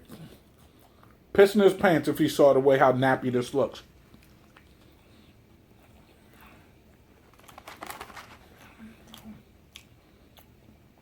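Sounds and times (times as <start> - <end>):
paper wrapper crinkling: 7.1 - 9.3.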